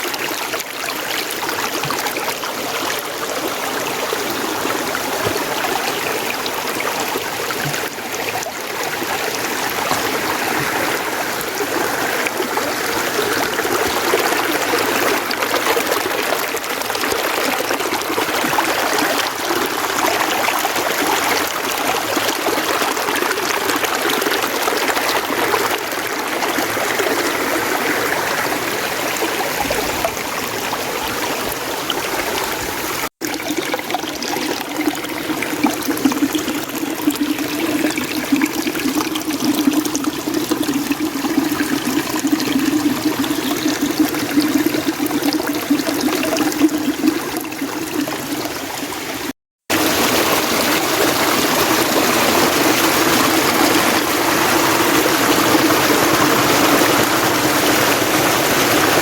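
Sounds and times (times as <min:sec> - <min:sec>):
mountain stream flowing: 0:00.0 - 0:59.0.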